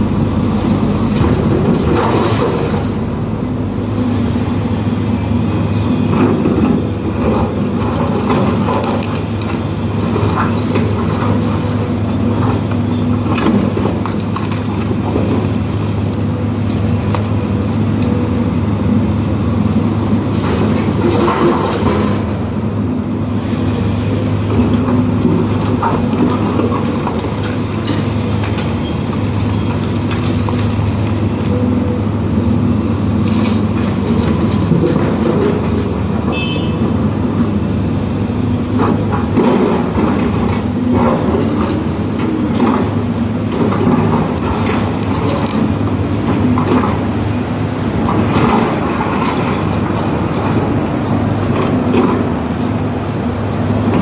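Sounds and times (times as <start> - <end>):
excavator diesel engine: 0.0 - 54.0.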